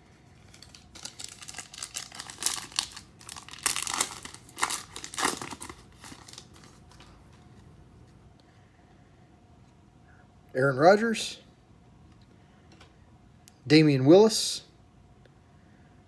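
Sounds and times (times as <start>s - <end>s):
wrapper crinkling and tearing: 0.3s - 7.4s.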